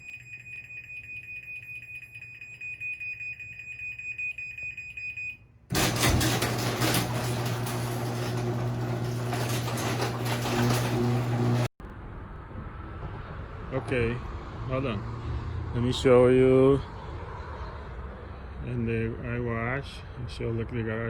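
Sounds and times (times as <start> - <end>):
garage door opener motor rattling: 5.7 - 11.7.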